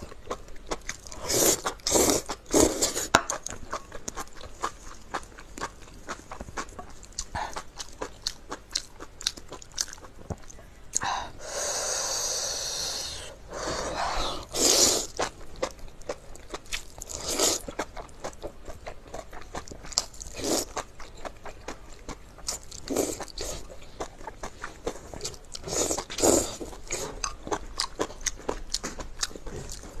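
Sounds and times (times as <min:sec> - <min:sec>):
person chewing with mouth clicks: 0:14.4 - 0:30.0.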